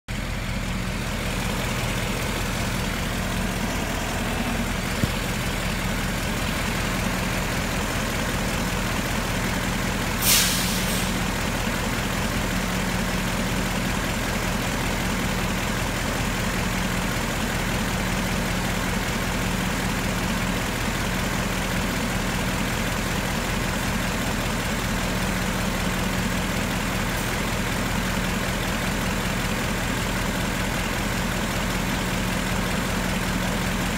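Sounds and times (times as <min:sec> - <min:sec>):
car engine idling: 0:00.1 - 0:33.9
short sharp hiss: 0:10.2 - 0:11.2.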